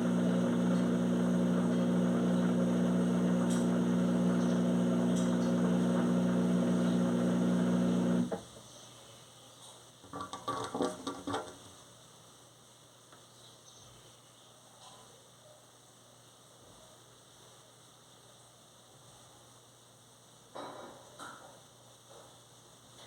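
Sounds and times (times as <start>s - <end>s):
washing machine spinning: 0.0s - 8.4s.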